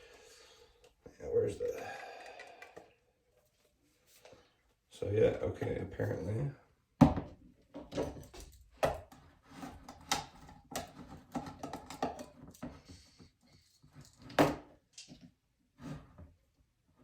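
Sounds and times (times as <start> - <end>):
objects knocking on hard surface: 7.0 - 9.1.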